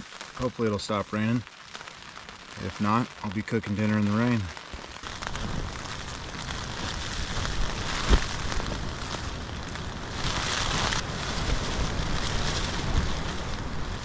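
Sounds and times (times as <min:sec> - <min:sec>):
rain falling: 0:00.0 - 0:14.0
wind buffeting microphone: 0:04.8 - 0:14.0.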